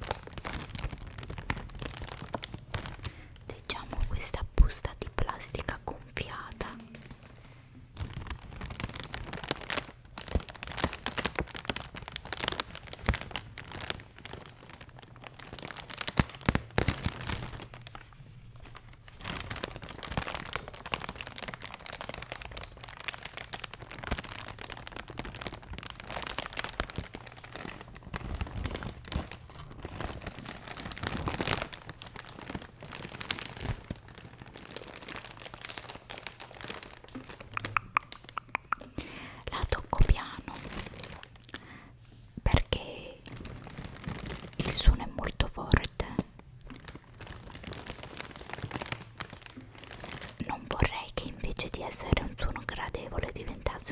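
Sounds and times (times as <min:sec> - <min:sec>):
packaging crinkling: 0:00.0 - 0:41.8, 0:42.7 - 0:53.9.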